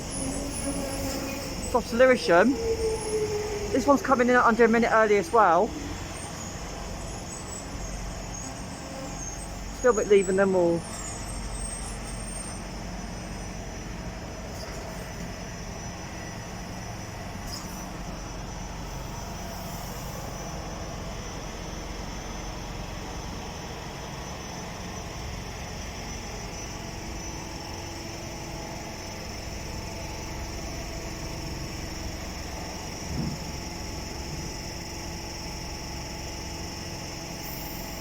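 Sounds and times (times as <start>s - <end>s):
train electrical hum and whine: 0.0s - 38.0s
short knock: 33.1s - 33.5s.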